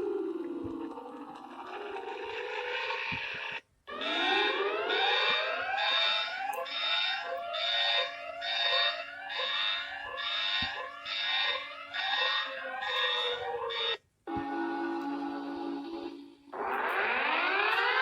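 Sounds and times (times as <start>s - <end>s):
rising electronic alarm sweeps: 0.0s - 18.0s.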